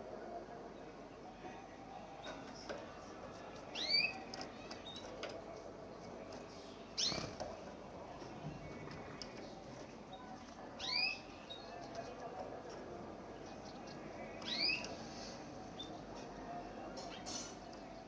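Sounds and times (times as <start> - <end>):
canary chirping: 3.7 - 5.3, 5.9 - 7.4, 8.3 - 12.2, 13.3 - 16.1.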